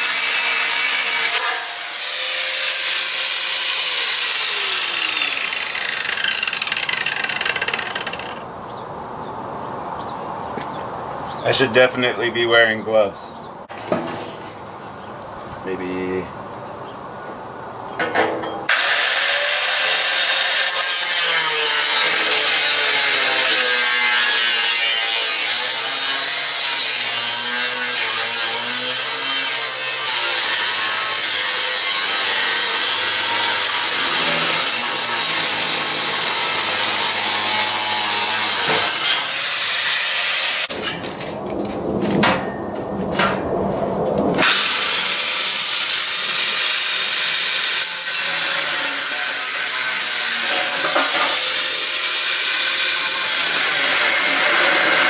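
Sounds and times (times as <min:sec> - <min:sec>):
power grinder grinding metal: 0:00.0 - 0:08.4, 0:18.7 - 0:41.0, 0:44.4 - 0:55.0.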